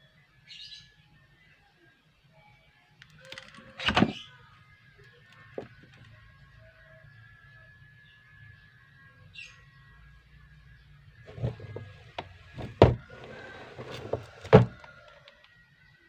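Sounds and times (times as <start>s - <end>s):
knocks and clatters: 11.3s - 14.8s.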